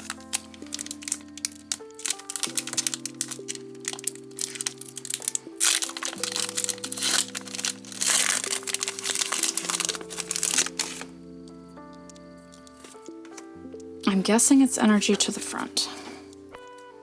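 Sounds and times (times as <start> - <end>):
foil wrapper crinkling: 0.0 - 11.2
background music: 0.0 - 17.0.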